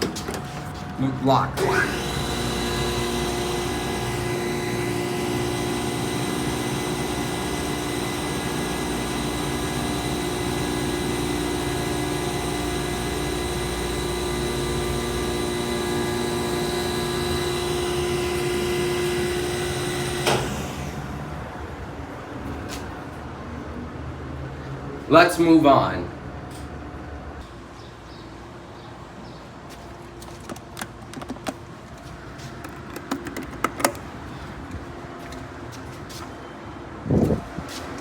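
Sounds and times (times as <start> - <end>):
elevator pump humming and whining: 0.0 - 23.2, 29.6 - 38.0
pump cutoff click: 1.6 - 20.7, 32.6 - 34.1.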